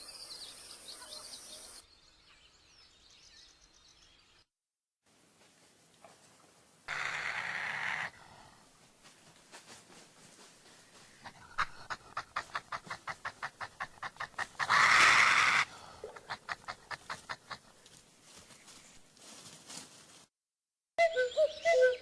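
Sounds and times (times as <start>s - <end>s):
animal chattering call: 6.9s - 8.1s, 11.3s - 17.5s.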